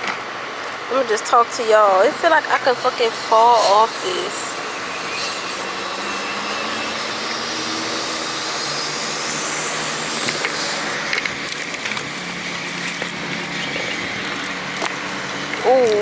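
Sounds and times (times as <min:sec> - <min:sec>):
chairlift mechanical hum: 0:00.0 - 0:16.0
sharp clicks and rattles: 0:10.0 - 0:16.0.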